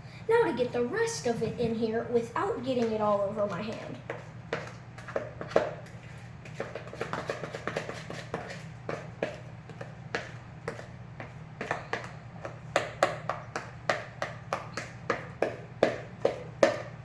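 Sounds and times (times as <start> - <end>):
steady low hum: 0.0 - 17.0
spoon tapping and scraping a bowl: 4.0 - 17.0.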